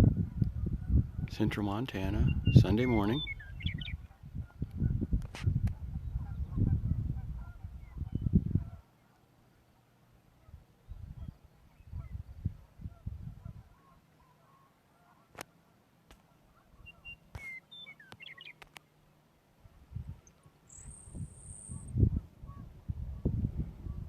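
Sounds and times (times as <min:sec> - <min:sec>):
meadowlark singing: 0:02.0 - 0:04.1, 0:16.8 - 0:18.6, 0:20.2 - 0:22.6.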